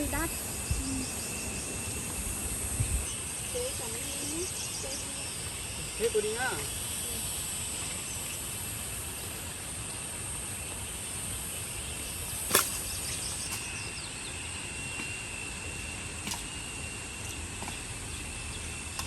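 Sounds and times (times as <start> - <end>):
high-pitched insect chirring: 0.0 - 19.0
sharp click: 12.5 - 13.7.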